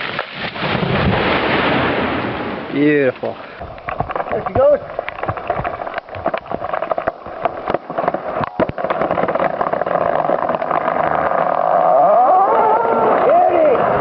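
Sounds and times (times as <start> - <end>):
wood cracking and branches snapping: 0.0 - 1.4, 3.6 - 12.4.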